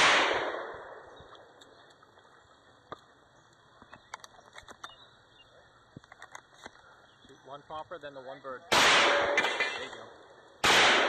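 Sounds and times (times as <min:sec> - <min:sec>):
gunshot: 0:00.0 - 0:01.0, 0:08.7 - 0:09.9, 0:10.6 - 0:11.0.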